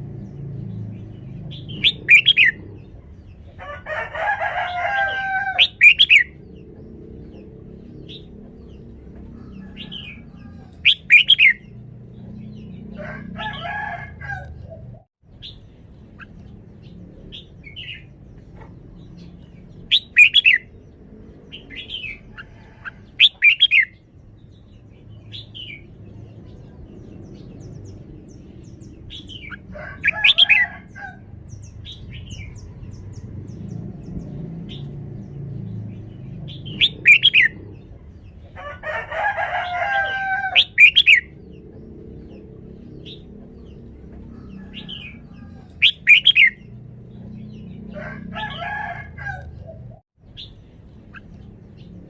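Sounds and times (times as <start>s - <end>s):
bird chattering calls: 1.4s - 3.1s, 5.1s - 8.8s, 9.7s - 11.8s, 17.3s - 20.7s, 21.5s - 24.0s, 36.4s - 37.9s, 40.5s - 41.4s, 44.4s - 46.8s.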